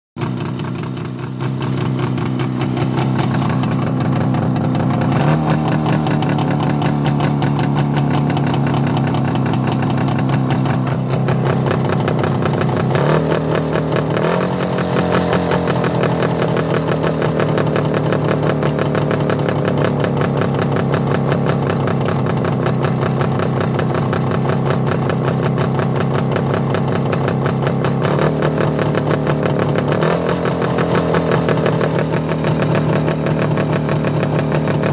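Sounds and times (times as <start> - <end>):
motorcycle engine running: 0.2 - 34.9.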